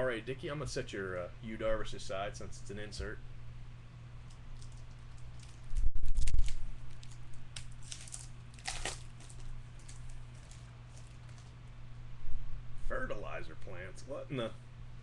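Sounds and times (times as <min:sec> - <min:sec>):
steady low hum: 0:00.0 - 0:15.0
cards rustling: 0:04.4 - 0:11.6
foil pack tearing and crinkling: 0:04.6 - 0:11.6.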